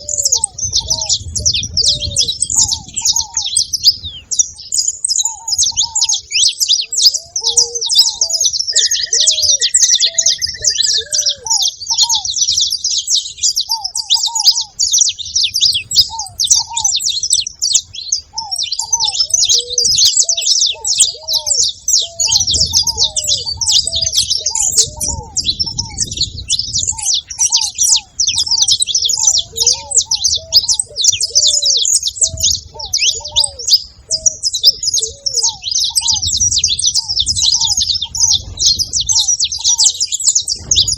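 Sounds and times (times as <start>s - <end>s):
doves cooing: 0.0s - 40.9s
finches chirping and singing: 0.0s - 40.9s
drawn-out whistle: 8.7s - 11.7s.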